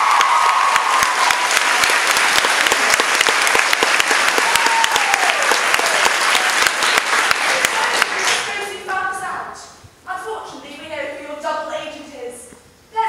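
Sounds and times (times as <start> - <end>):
audience applauding: 0.0 - 8.8.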